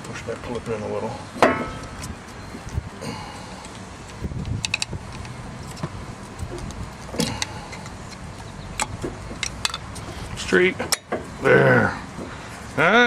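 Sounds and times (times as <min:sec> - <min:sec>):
brake pads clicking and clinking: 0:03.6 - 0:11.3.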